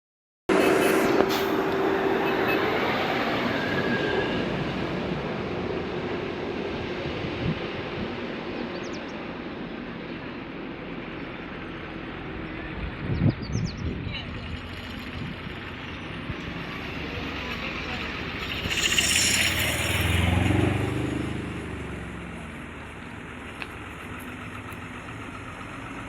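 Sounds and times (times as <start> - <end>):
large vehicle passing: 10.4 - 26.0.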